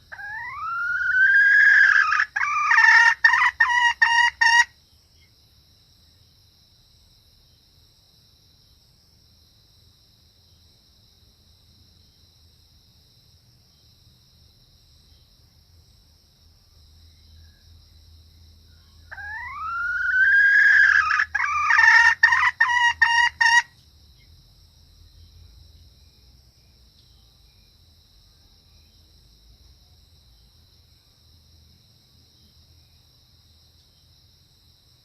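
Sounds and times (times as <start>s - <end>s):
junglefowl hen calling: 0.0s - 4.7s, 19.0s - 23.7s
crickets trilling: 0.0s - 35.0s.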